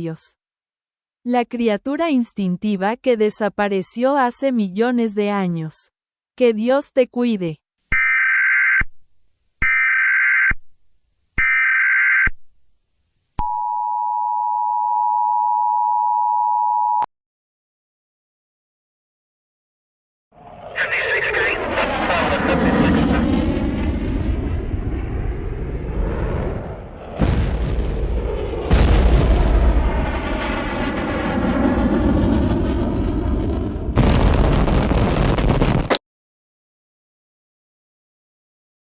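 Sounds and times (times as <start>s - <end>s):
deep rumble: 20.4s - 35.9s
explosion blasts: 20.4s - 36.0s.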